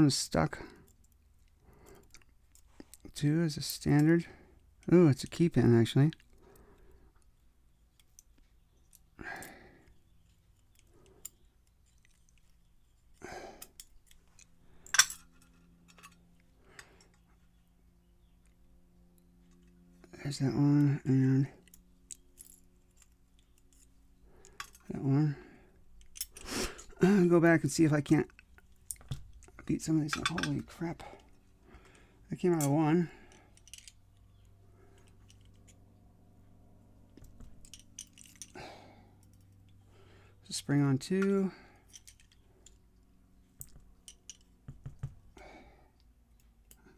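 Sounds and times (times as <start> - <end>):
low steady hum: 0.0 - 46.9
small metallic clicks and clinks: 7.9 - 17.3, 21.6 - 25.0, 26.0 - 26.9, 28.3 - 32.0, 32.6 - 35.9, 37.2 - 38.6, 39.2 - 39.8, 41.2 - 44.8
small clicks of lock pins: 21.6 - 24.9, 25.9 - 26.4, 33.3 - 35.8, 37.2 - 38.6, 41.2 - 42.9, 43.6 - 44.6.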